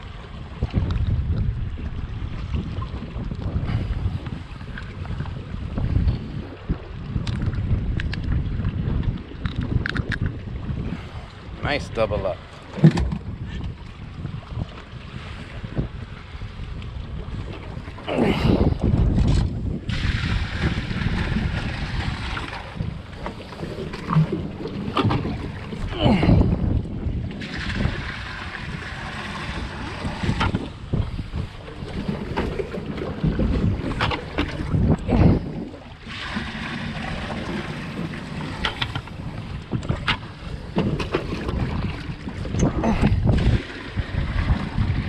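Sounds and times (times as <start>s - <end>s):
water rumbling against hull: 0.0s - 45.0s
wind buffeting microphone: 0.0s - 45.0s
knocks and thumps: 12.8s - 13.3s.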